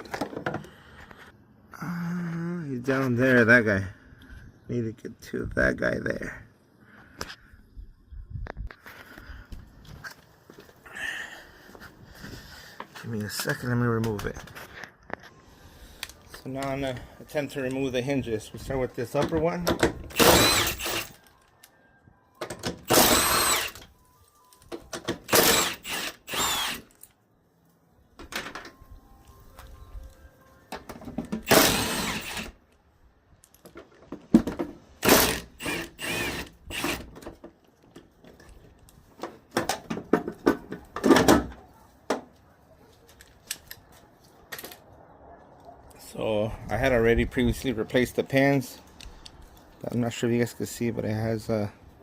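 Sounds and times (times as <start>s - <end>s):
power tool motor whine: 20.2s - 21.2s, 22.9s - 23.8s, 25.3s - 26.8s, 31.4s - 32.6s, 35.0s - 37.1s.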